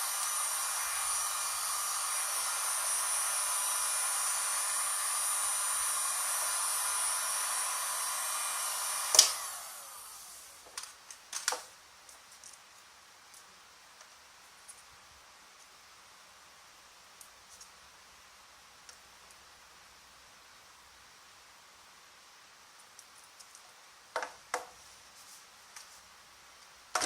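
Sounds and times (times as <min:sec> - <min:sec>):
heat gun fan blowing: 0:00.0 - 0:10.6
heat gun switch click: 0:09.1 - 0:09.4.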